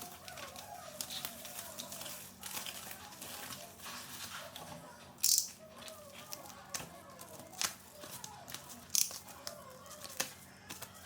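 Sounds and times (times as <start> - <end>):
packaging crinkling and rustling: 0.0 - 4.9.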